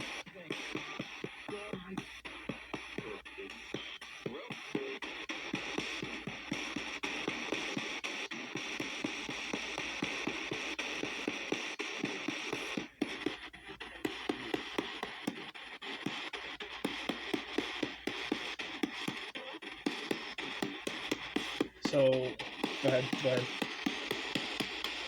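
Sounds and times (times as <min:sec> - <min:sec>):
radio static hiss: 0:00.0 - 0:25.0
snatches of radio: 0:00.0 - 0:25.0.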